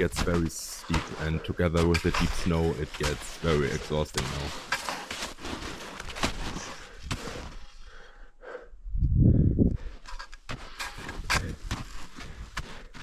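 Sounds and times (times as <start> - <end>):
footsteps crunching in snow: 0.0 - 7.8, 10.5 - 13.0.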